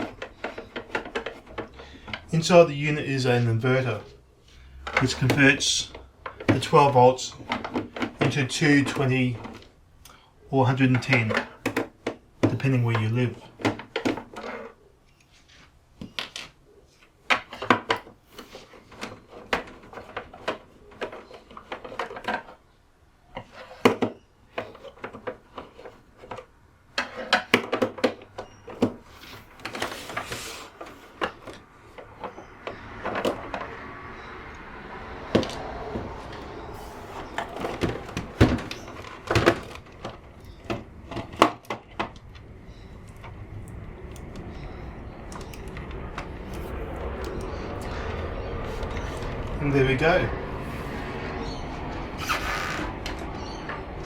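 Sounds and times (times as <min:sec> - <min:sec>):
clicks and knocks of plastic parts: 0:00.0 - 0:02.6, 0:03.5 - 0:50.0
short rushing scrape: 0:52.1 - 0:53.0.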